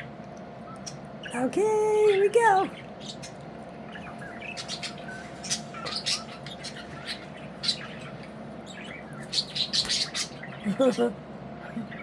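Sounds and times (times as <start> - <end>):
faint hum: 0.0 - 12.0
budgerigars chirping: 2.0 - 11.1.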